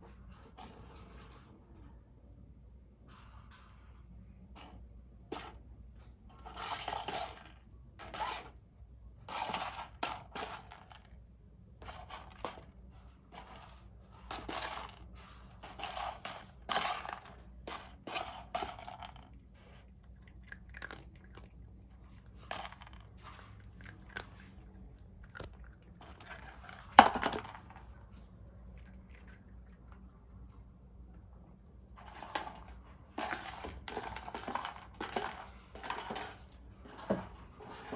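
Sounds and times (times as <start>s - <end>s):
kibble rattling in feeder: 14.3s - 19.3s.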